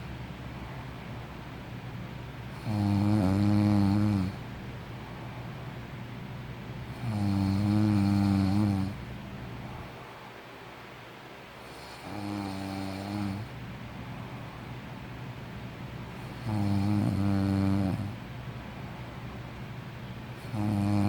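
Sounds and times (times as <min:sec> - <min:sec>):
person snoring: 0:02.6 - 0:04.4, 0:06.9 - 0:09.0, 0:11.7 - 0:13.5, 0:16.2 - 0:18.2, 0:20.4 - 0:21.0.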